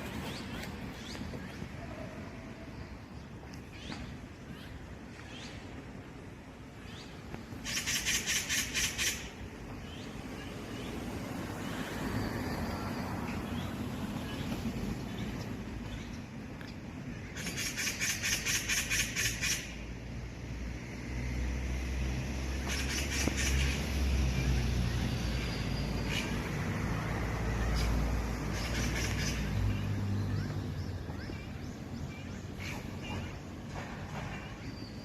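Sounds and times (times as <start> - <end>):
magpie chattering calls: 7.6 - 9.3, 17.4 - 19.8.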